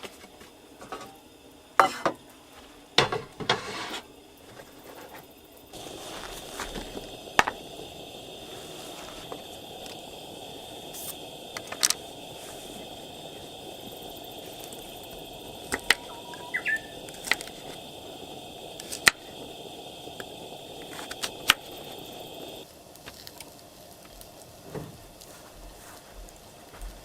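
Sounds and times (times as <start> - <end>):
campfire crackling: 0.0 - 27.0
high-pitched hum: 5.8 - 22.6.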